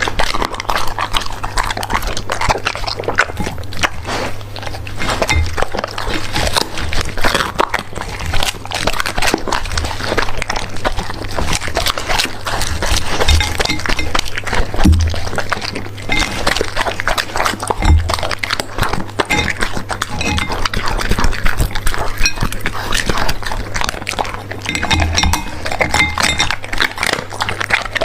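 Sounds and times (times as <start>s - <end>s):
dog chewing and crunching: 0.0s - 28.0s
clinks against plate: 5.3s - 5.6s, 19.3s - 20.6s, 22.2s - 22.5s, 24.7s - 26.6s.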